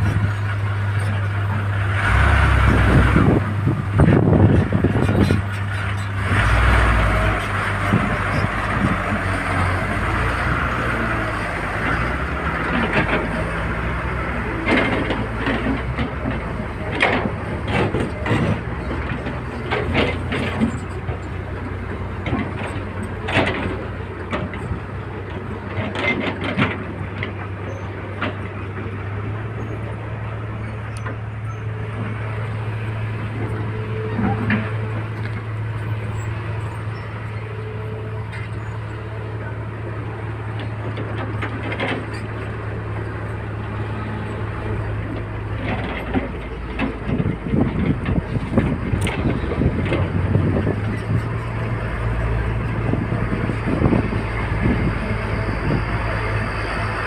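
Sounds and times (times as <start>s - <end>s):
excavator diesel engine running: 0.0s - 57.0s
knocks and clanks: 12.6s - 13.6s, 14.5s - 21.3s, 22.2s - 27.5s, 33.4s - 35.4s, 40.5s - 42.5s, 45.1s - 51.7s.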